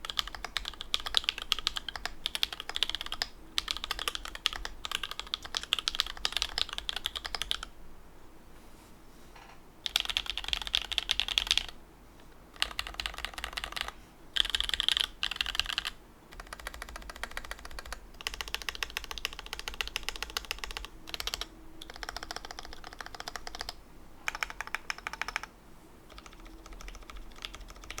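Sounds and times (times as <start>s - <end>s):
mechanical keyboard typing: 0.0s - 7.7s, 9.8s - 11.8s, 12.5s - 25.5s, 26.1s - 28.0s.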